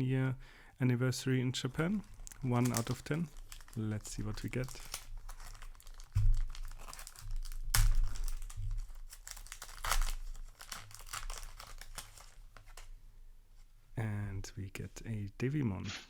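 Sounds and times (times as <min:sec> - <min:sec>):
wrapper tearing and crinkling: 0:01.6 - 0:12.9.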